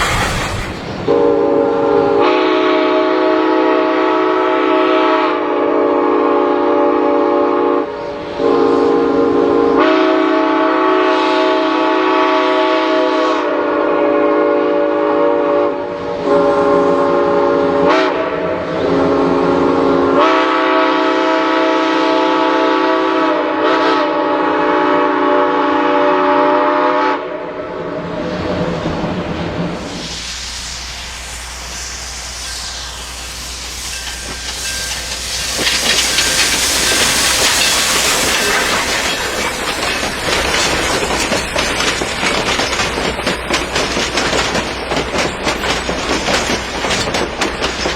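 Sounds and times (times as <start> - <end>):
train horn blasts: 1.1 - 28.0.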